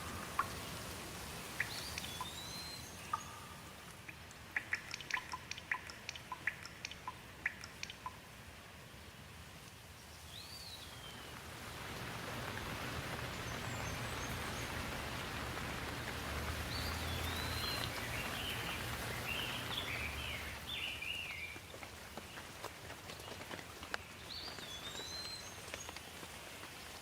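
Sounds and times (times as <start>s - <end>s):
rain falling: 0.0s - 27.0s
bird chirping: 1.5s - 3.8s, 4.6s - 8.2s, 13.0s - 21.6s, 24.0s - 26.0s.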